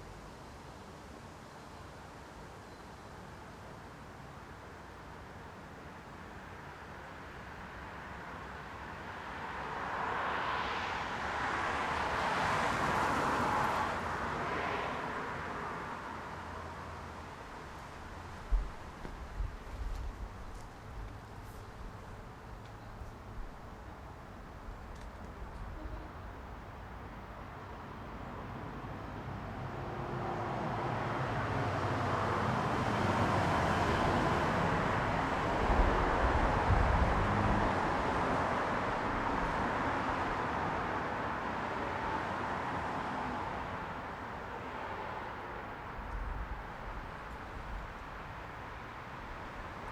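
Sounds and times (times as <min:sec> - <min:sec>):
cars driving past: 0:08.5 - 0:19.0, 0:28.0 - 0:49.9.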